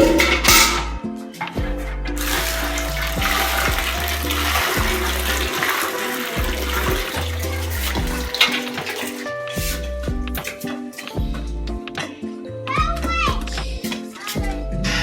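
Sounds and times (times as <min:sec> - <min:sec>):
background music with bass: 0:00.0 - 0:15.0
water rushing and splashing: 0:02.2 - 0:09.8.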